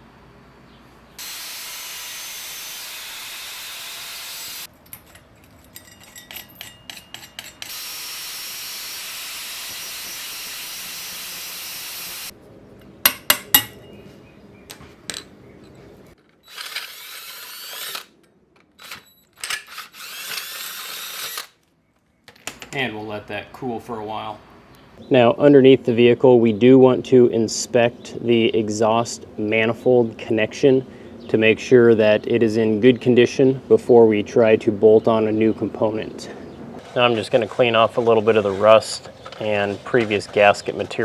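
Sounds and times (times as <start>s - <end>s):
power tool on steel: 1.2s - 4.7s, 7.1s - 12.3s, 16.4s - 18.1s, 18.8s - 21.5s
sharp metal knocks: 13.0s - 13.8s.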